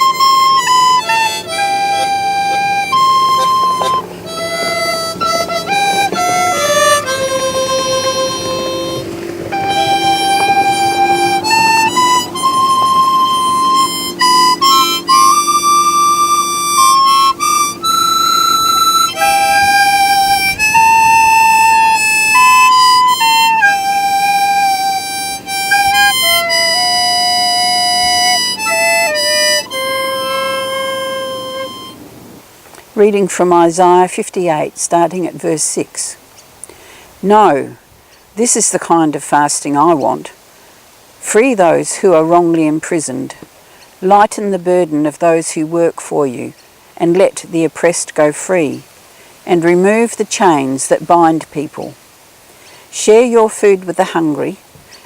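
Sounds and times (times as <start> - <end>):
low drone: 0.0 - 32.2
wind instrument melody: 0.0 - 32.4.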